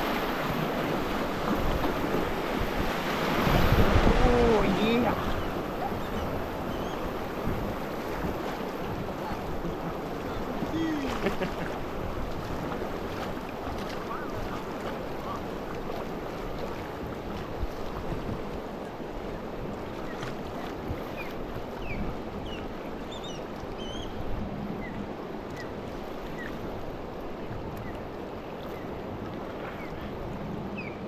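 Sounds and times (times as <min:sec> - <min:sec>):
river water rushing: 0:00.0 - 0:17.9.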